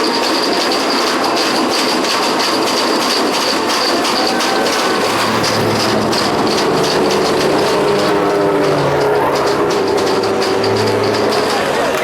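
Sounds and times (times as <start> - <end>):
racing car engine running hard: 0.0 - 12.0.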